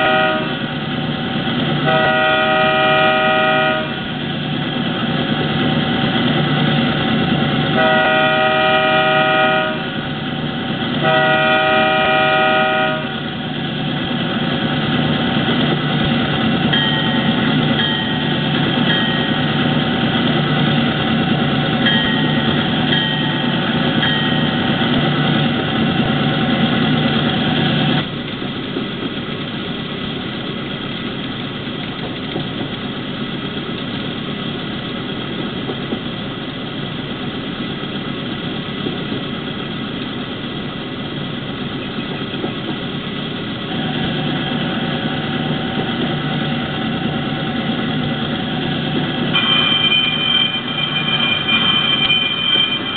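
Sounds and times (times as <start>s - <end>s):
long horn blasts: 0.0s - 0.7s, 1.8s - 4.1s, 7.7s - 10.0s, 11.0s - 13.3s
diesel engine rumble: 0.0s - 52.9s
short high horn toots: 11.0s - 13.2s.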